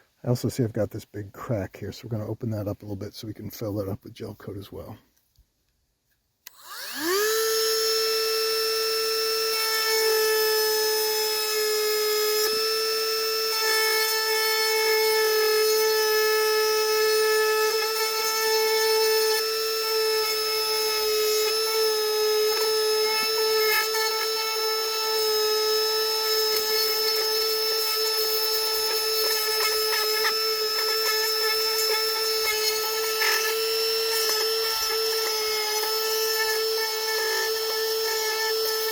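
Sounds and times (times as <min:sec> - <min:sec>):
rotary tool grinding whine: 0:06.4 - 0:38.9.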